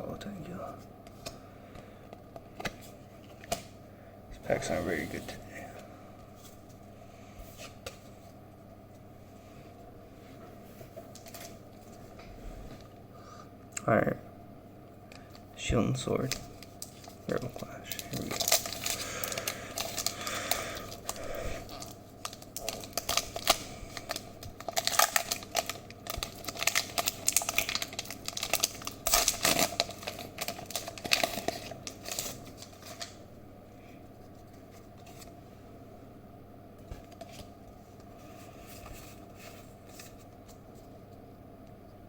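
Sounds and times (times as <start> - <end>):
foil wrapper crackling and tearing: 16.2 - 33.2.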